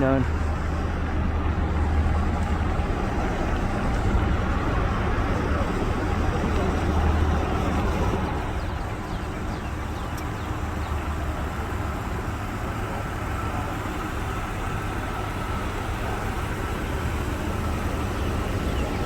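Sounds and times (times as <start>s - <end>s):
low rumble of traffic: 0.0s - 19.0s.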